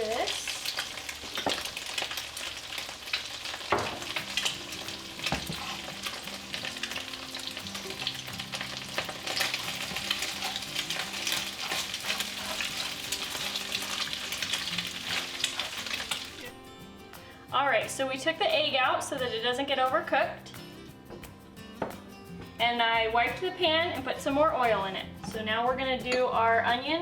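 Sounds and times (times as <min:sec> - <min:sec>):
utensil stirring in pan: 0:00.0 - 0:16.4
eggs sizzling in hot oil: 0:00.0 - 0:16.5.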